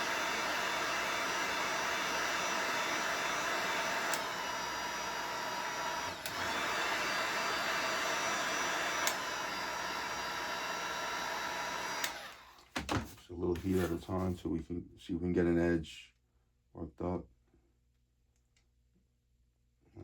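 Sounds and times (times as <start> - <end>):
heat gun blowing: 0.0 - 12.7.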